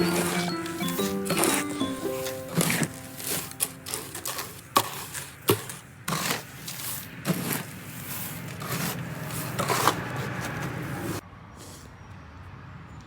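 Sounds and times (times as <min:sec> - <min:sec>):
buckets knocking and clattering: 0:00.0 - 0:07.7.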